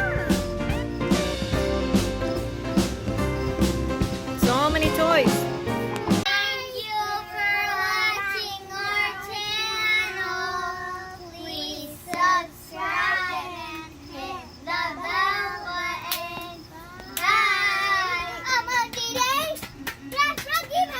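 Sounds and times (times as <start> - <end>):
child singing: 6.3 - 19.4.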